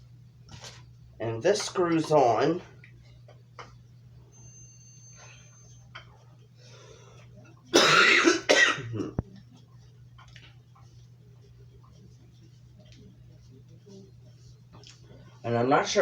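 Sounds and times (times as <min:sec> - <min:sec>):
man coughing: 0:07.7 - 0:09.2.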